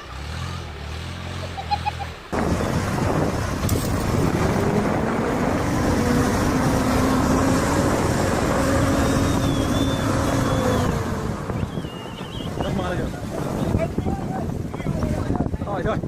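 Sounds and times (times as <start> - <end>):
vehicle engine running loudly: 0.0 - 15.5.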